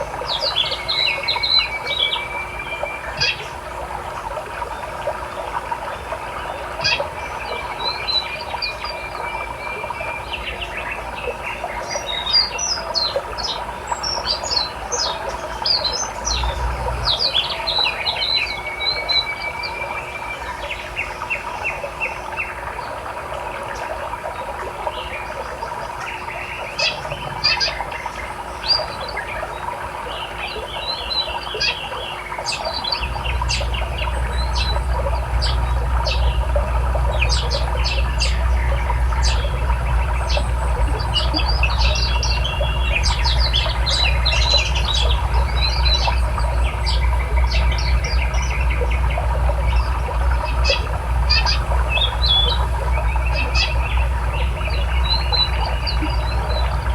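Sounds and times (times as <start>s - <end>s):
songbirds chirping: 0.0s - 56.9s
low rumble: 16.2s - 17.4s, 33.0s - 56.9s.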